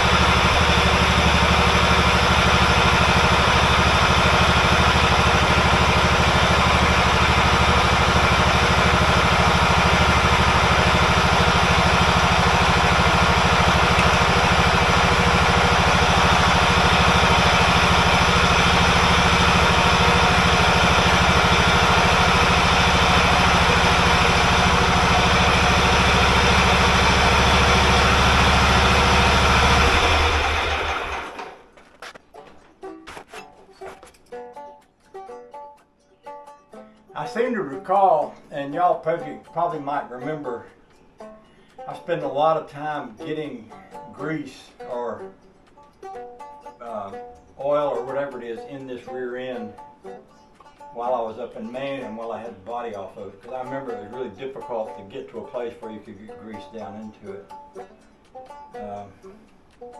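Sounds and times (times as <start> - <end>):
tractor engine running: 0.0 - 34.2.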